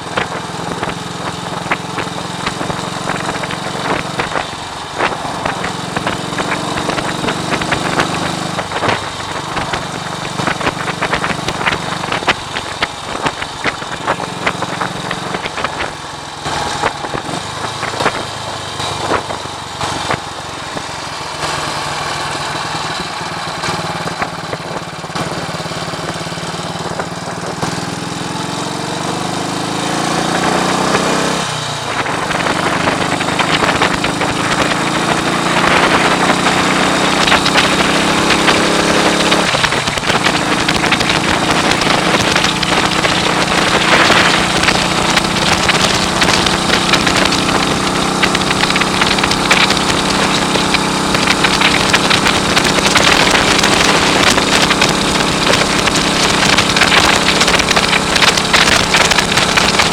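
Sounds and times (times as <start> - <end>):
wind buffeting microphone: 0.0 - 20.9, 21.9 - 27.9, 30.4 - 59.9
motorcycle engine running: 0.0 - 59.9.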